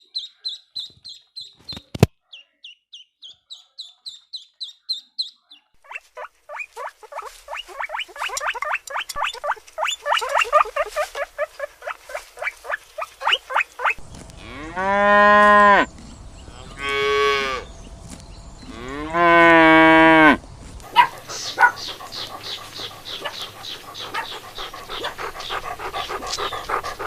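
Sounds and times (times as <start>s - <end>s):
falling squeaky animal calls: 4.4s - 14.0s
short high animal chirps: 5.8s - 14.0s.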